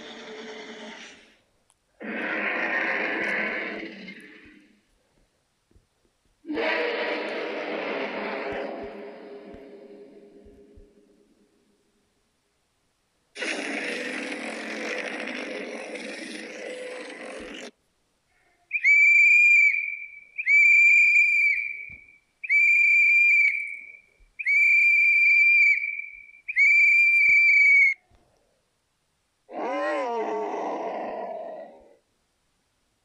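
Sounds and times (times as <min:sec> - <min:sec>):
high whistle-like creature calls: 0:00.0 - 0:01.3, 0:02.0 - 0:04.7, 0:06.5 - 0:10.3, 0:13.4 - 0:17.7, 0:18.7 - 0:28.0
steady low hum: 0:03.2 - 0:18.0.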